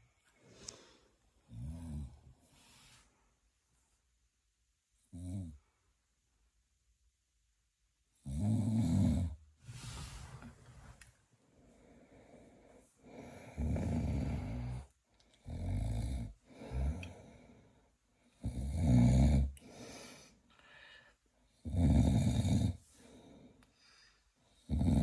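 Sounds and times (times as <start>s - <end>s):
person snoring: 1.5s - 2.2s, 8.2s - 10.2s, 13.0s - 17.6s, 18.4s - 20.4s, 21.6s - 23.5s, 24.6s - 25.0s
person snorting: 13.1s - 14.9s.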